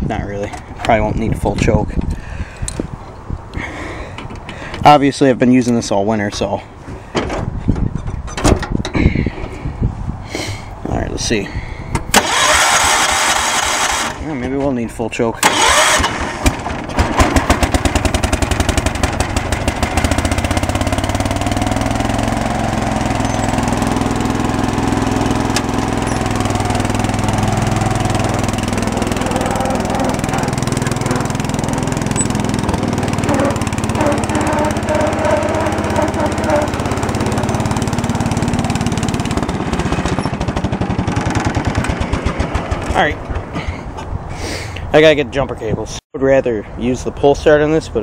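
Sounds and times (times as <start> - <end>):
small engine running: 12.2 - 14.2, 15.4 - 43.0.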